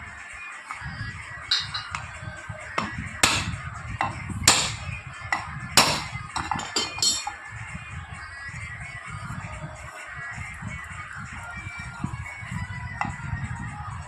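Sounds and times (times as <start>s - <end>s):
background music: 0.0s - 14.0s
hammer knocking on metal: 1.5s - 2.1s, 2.8s - 7.4s.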